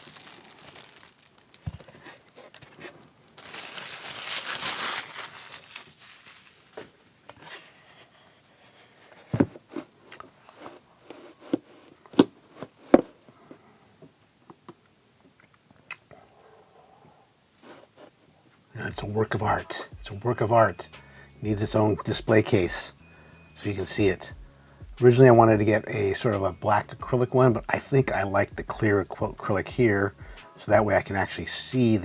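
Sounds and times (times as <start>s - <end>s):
plastic packaging crinkling: 0.0s - 7.3s.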